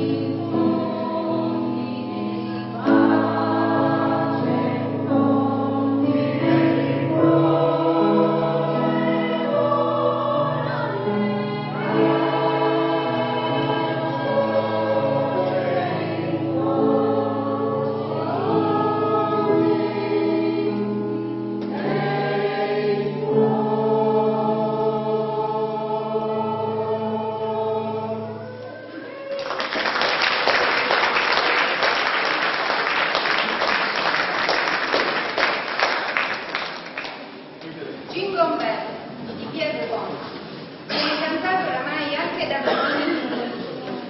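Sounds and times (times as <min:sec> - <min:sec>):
choir singing: 0:00.0 - 0:29.1
audience applauding: 0:29.2 - 0:37.4.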